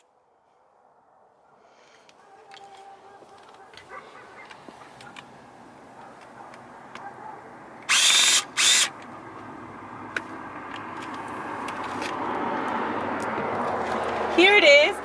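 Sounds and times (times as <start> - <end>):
cordless drill whirring: 7.8 - 9.0.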